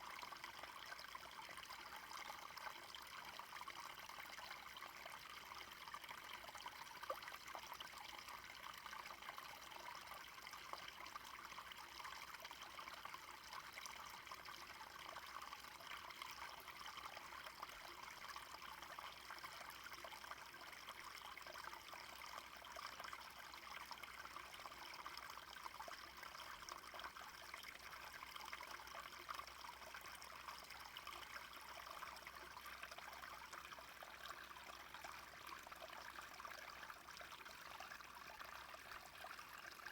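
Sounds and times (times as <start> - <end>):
small stream trickling: 0.0 - 39.9.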